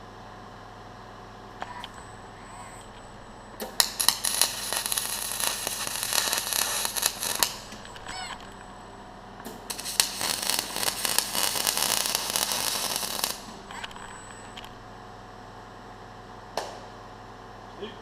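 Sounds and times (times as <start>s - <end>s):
steady low hum: 0.0s - 18.0s
welding arc crackling: 3.6s - 8.7s, 9.4s - 14.9s.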